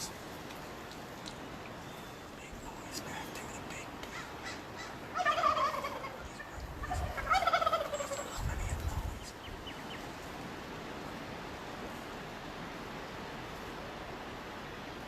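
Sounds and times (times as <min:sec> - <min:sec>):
turkey gobbling: 0:04.0 - 0:08.4
low rumble on microphone: 0:08.2 - 0:09.8.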